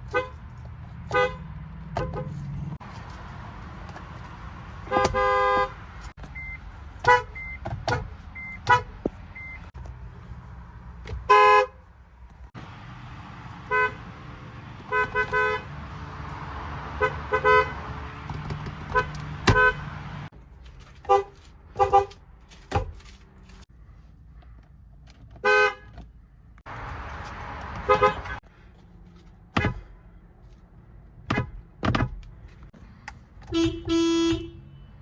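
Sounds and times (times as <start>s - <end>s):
car horns honking: 0.0s - 2.6s, 4.8s - 9.7s, 11.1s - 11.9s, 13.6s - 15.9s, 16.8s - 20.3s, 21.0s - 22.2s, 25.4s - 26.1s, 27.4s - 28.4s, 33.4s - 35.0s
engine and traffic rumble: 0.0s - 35.0s.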